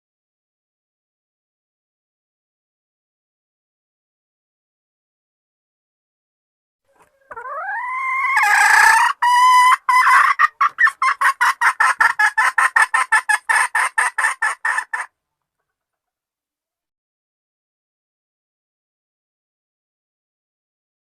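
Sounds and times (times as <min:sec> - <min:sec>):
hen clucking rapidly: 0:06.9 - 0:15.1.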